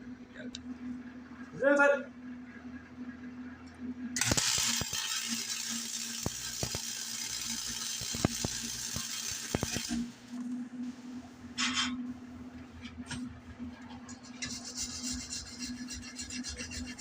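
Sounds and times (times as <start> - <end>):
low hum: 0.0 - 14.3
arc welding crackling hiss: 4.2 - 11.0.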